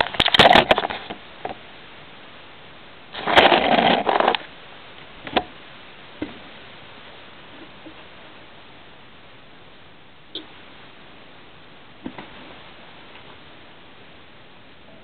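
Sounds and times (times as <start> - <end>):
scrape or rustle: 3.1 - 4.5.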